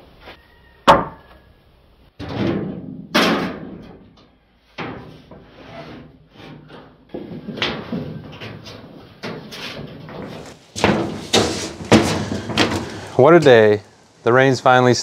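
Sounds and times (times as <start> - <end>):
wood scraping and rubbing: 9.5 - 15.0.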